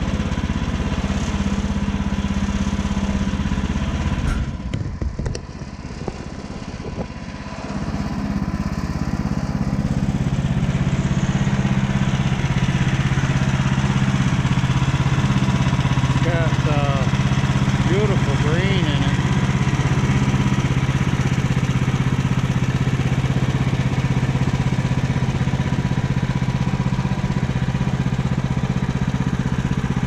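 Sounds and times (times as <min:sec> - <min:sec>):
sawmill gas engine running: 0:00.0 - 0:30.0.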